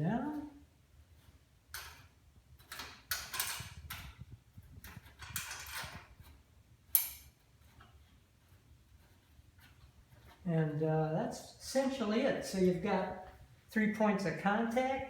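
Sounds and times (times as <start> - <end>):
bolts scraping on sheet metal: 1.1 - 10.4.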